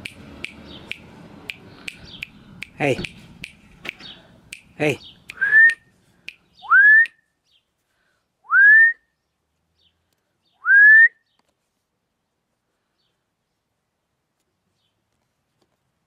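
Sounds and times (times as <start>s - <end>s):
rising whistle: 5.3s - 5.8s, 6.6s - 7.2s, 8.5s - 9.1s, 10.6s - 11.2s.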